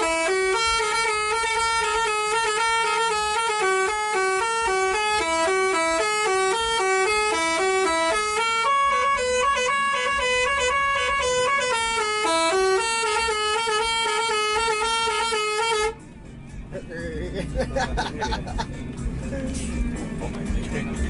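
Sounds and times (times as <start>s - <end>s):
musical bus air horn: 0.0s - 16.0s.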